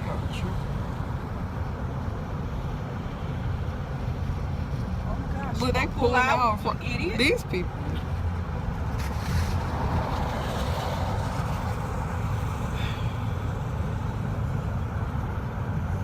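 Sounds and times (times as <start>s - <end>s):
car engine and tyre rumble: 0.0s - 16.0s
tyre hiss on wet road: 8.9s - 13.8s.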